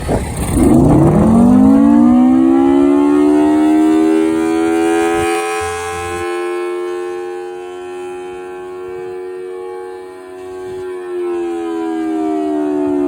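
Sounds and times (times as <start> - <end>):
low rumble: 0.0 - 3.5
civil defense siren winding up: 0.4 - 13.0.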